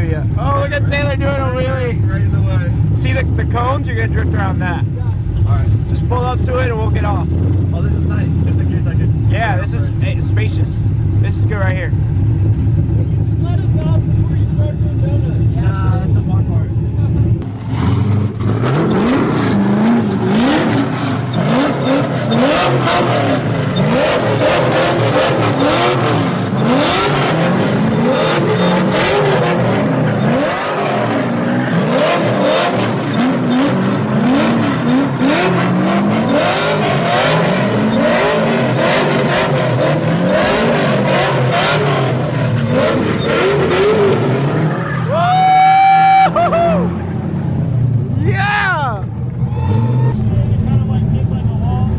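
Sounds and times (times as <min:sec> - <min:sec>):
car engine revving: 0:00.0 - 0:51.9
tires squealing: 0:17.0 - 0:47.1, 0:48.2 - 0:50.3.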